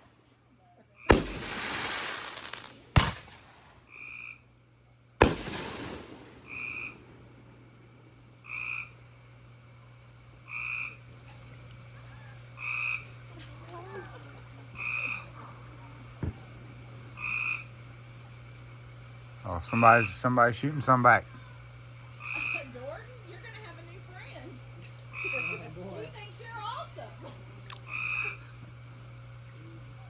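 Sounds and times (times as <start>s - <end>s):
steady low hum: 0.0s - 30.0s
firework bangs: 1.1s - 4.1s, 5.2s - 7.5s
frog calling: 3.9s - 4.4s, 6.4s - 7.1s, 8.4s - 9.0s, 10.4s - 11.0s, 12.2s - 13.2s, 14.7s - 15.4s, 17.1s - 17.7s, 22.1s - 22.8s, 25.1s - 25.7s, 27.7s - 28.6s.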